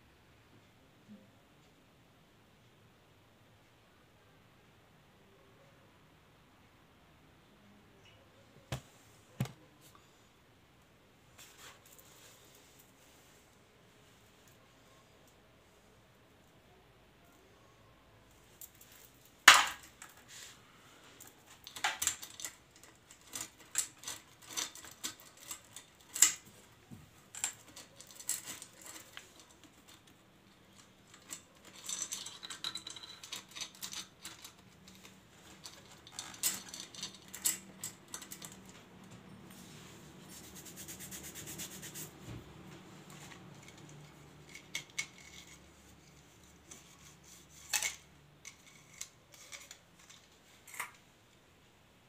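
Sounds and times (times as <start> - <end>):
metal parts and tools clinking: 21.2 - 26.6, 27.3 - 39.6, 43.0 - 51.0.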